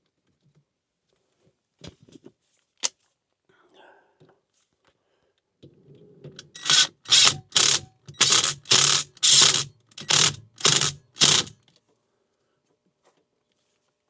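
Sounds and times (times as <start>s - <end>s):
power drill driving fasteners: 6.4s - 11.5s.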